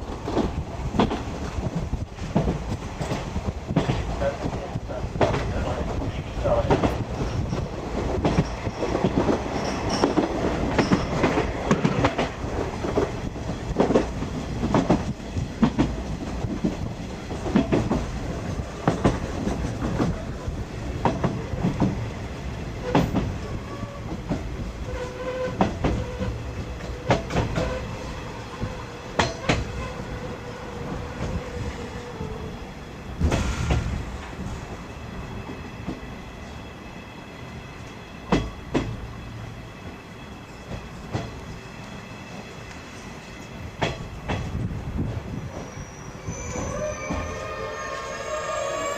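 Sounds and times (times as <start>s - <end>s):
train rumble: 0.0s - 48.9s
wheels clicking over rail joints: 22.8s - 27.8s.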